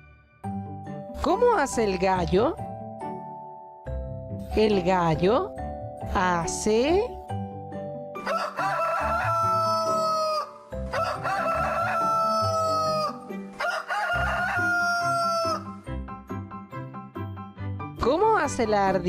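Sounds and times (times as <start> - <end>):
children's music: 0.0 - 19.0
rooster crowing: 8.2 - 15.8.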